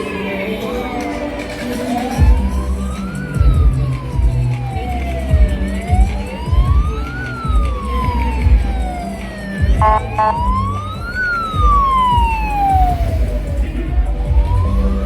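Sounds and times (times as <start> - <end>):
siren wailing: 0.0 - 15.0
street traffic rumble: 0.0 - 15.0
short horn beeps: 9.8 - 10.4.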